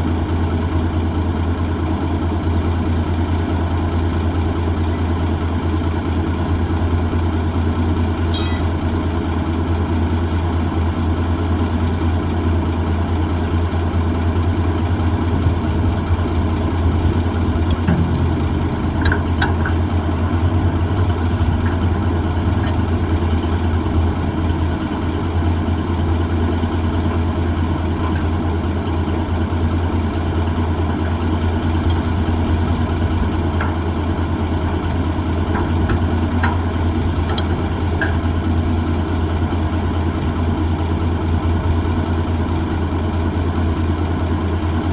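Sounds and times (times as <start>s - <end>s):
diesel engine running: 0.0s - 44.9s
faint clicks and knocks: 17.6s - 21.9s.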